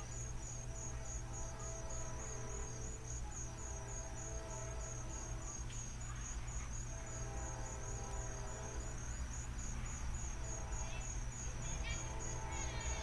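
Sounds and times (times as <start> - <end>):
cricket chirping: 0.0 - 13.0.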